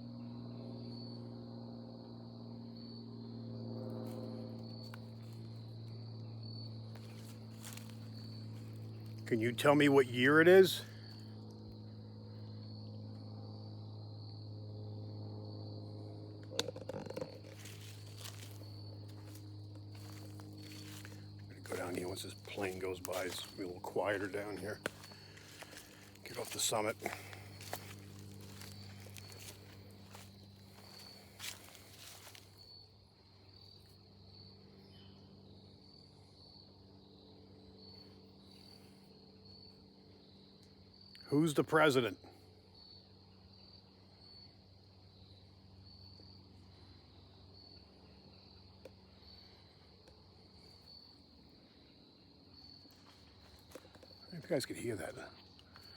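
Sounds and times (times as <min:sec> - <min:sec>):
airplane droning overhead: 0:00.0 - 0:55.9
faint low hum: 0:00.0 - 0:55.9
insects calling: 0:00.0 - 0:55.9.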